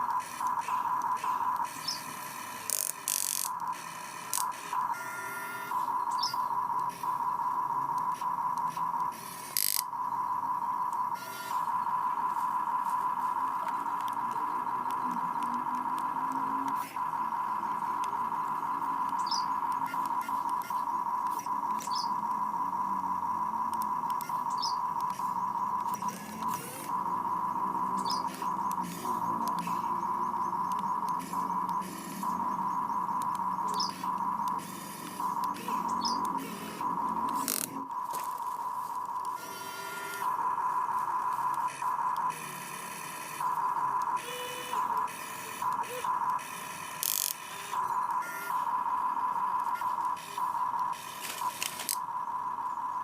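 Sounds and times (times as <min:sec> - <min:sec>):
high electric whine: 0:00.0 - 0:53.0
small clicks: 0:19.0 - 0:22.4, 0:30.6 - 0:32.4, 0:33.1 - 0:38.3, 0:44.9 - 0:47.8, 0:49.6 - 0:52.0.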